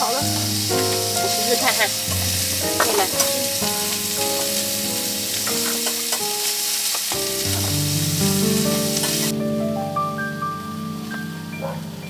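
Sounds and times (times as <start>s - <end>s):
food sizzling in a pan: 0.0s - 12.0s.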